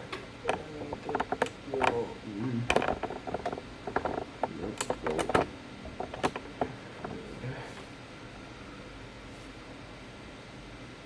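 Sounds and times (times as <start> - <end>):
steady background hiss: 0.0 - 11.0
short clicks and light knocks: 0.1 - 2.0, 2.7 - 7.2.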